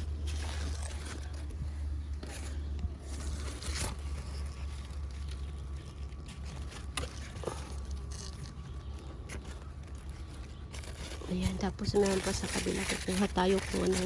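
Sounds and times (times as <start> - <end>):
leaves rustling and tearing: 0.0 - 14.0
steady low rumble: 0.0 - 14.0
stems snapping: 2.2 - 8.6.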